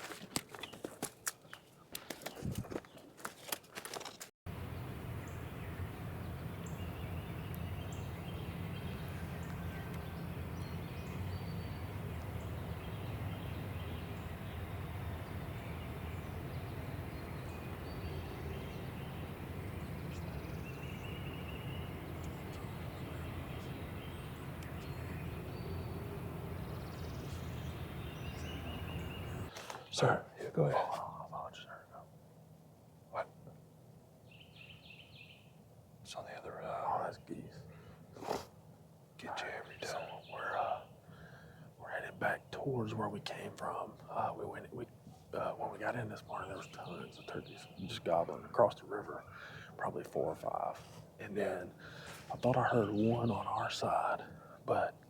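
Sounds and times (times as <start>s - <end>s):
low outdoor rumble: 4.5s - 34.3s
faint bird chirps: 5.1s - 32.1s, 39.2s - 54.9s.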